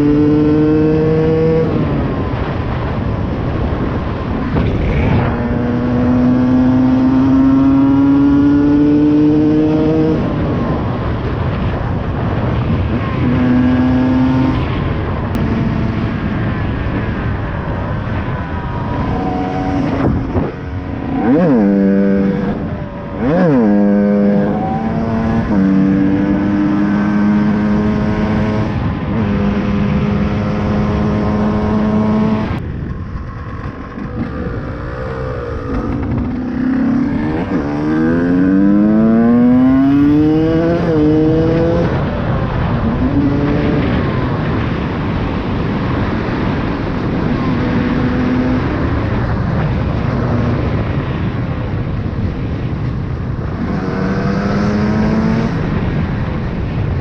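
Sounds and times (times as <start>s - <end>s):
two-stroke motorcycle engine revving: 53.4s - 56.0s.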